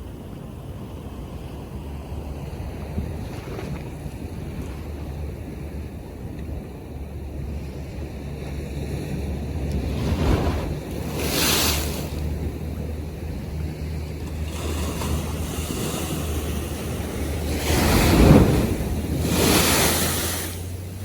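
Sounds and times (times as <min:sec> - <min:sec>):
wind buffeting microphone: 0:00.0 - 0:21.0
waves washing and splashing: 0:00.7 - 0:21.0
steady low hum: 0:05.3 - 0:21.0.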